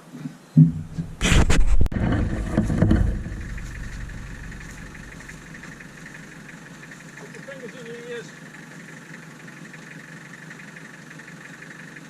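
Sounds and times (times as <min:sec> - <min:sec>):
knocks and clunks: 0:00.6 - 0:06.3
vehicle engine rumbling: 0:00.6 - 0:12.0.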